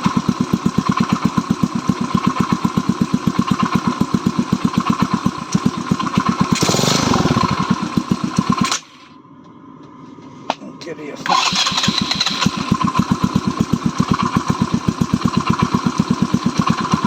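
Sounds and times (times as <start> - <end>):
engine idling: 0.0 - 9.0, 11.3 - 17.0.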